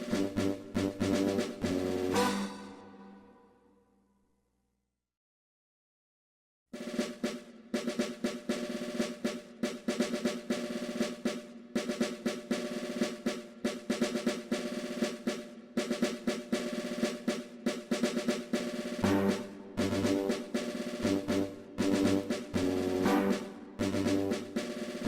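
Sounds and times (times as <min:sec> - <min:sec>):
steady drum beat: 0:00.0 - 0:02.9, 0:06.8 - 0:25.0
snare drum rolls: 0:00.0 - 0:03.0, 0:06.8 - 0:25.0
held chords: 0:19.0 - 0:24.6.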